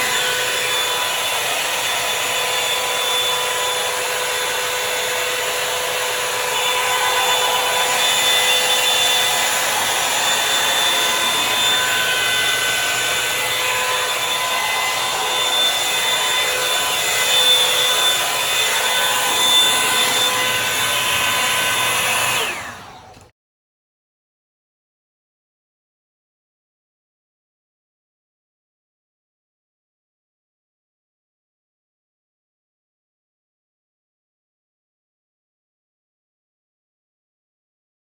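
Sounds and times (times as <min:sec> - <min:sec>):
hair dryer blowing air: 0:00.0 - 0:23.3.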